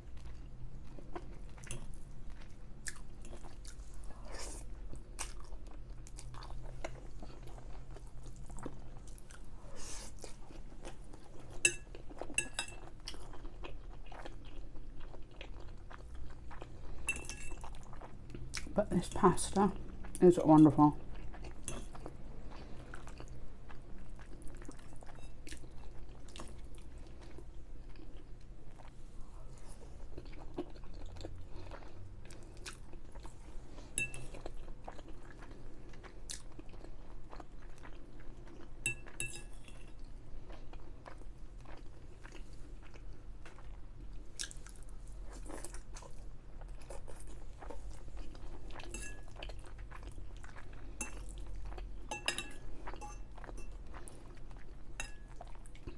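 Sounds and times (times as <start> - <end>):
chewing pasta: 0.0 - 55.9
cutlery clinking on plate: 52.1 - 53.7.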